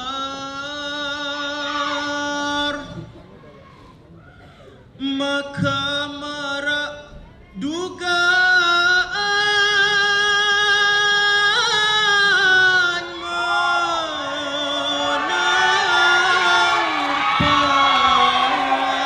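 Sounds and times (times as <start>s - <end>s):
man singing long held notes: 7.7s - 19.0s
group of voices singing: 12.9s - 19.0s.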